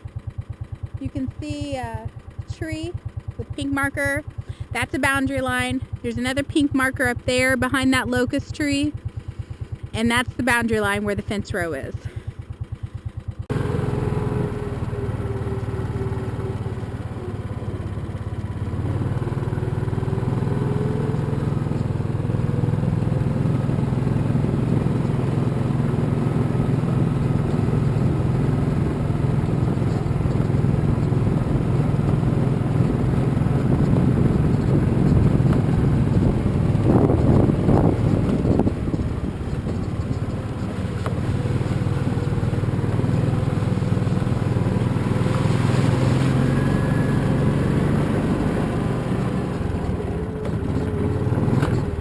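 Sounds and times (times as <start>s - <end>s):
farm vehicle engine running: 0.0s - 52.0s.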